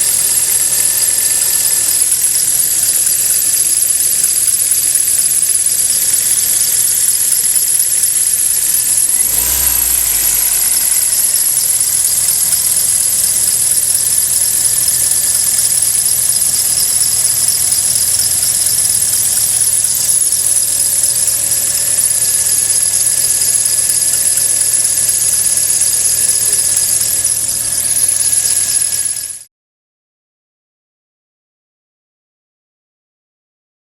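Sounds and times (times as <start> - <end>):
belt squeal: 0.0 - 29.4
car engine running: 9.0 - 22.7.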